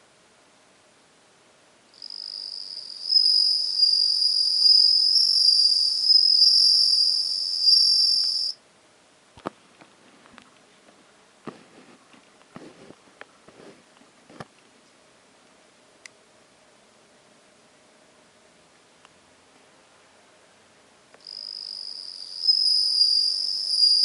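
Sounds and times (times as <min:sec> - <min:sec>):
cricket singing a ringing trill: 0:01.9 - 0:08.6, 0:21.2 - 0:24.0.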